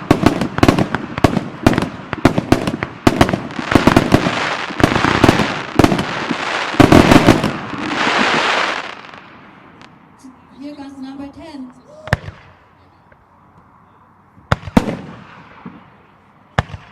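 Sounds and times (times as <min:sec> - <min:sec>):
fireworks bangs: 0:00.0 - 0:10.0, 0:10.7 - 0:13.2, 0:14.4 - 0:16.9
fireworks hissing: 0:03.5 - 0:09.8.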